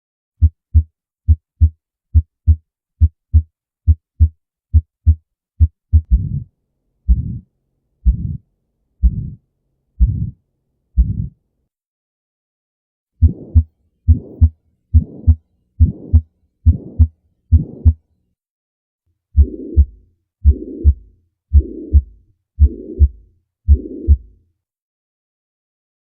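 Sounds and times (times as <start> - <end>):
heartbeat: 0.4 - 6.5, 7.1 - 8.4, 9.0 - 9.4, 10.0 - 10.4, 11.0 - 11.4, 13.2 - 18.0, 19.4 - 24.4.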